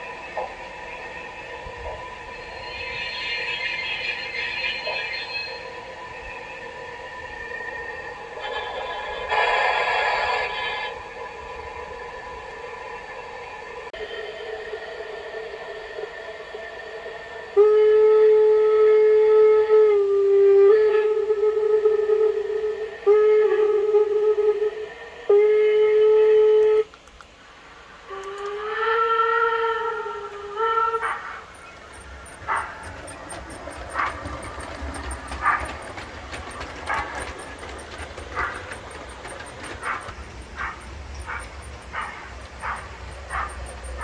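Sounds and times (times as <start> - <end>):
low hum: 0.0 - 44.0
train horn blast: 17.5 - 26.9, 28.6 - 44.0
dog barks: 30.9 - 44.0.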